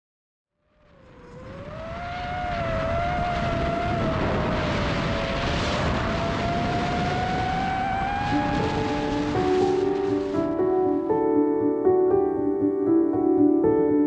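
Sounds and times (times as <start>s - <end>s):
drone motors humming: 0.9s - 10.5s
air rushing: 1.2s - 11.2s.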